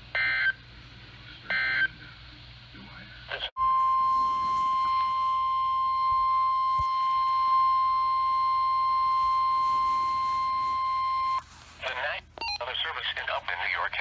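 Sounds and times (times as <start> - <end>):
steady high alarm tone: 3.6 - 11.5.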